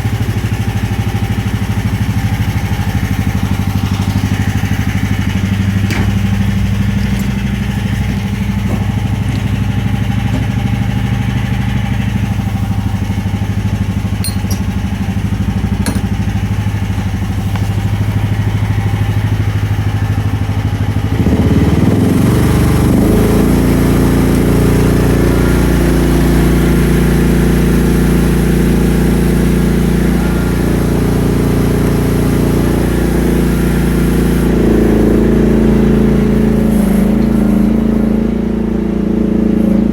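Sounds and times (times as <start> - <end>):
petrol engine running: 0.0 - 39.5.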